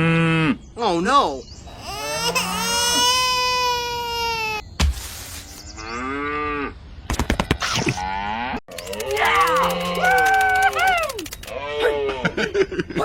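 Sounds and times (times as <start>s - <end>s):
quick clicks: 8.7s - 11.5s.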